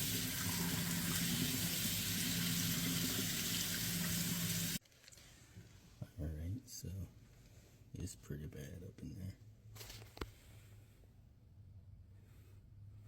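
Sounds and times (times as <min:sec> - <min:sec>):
water running in sink: 0:00.0 - 0:04.8.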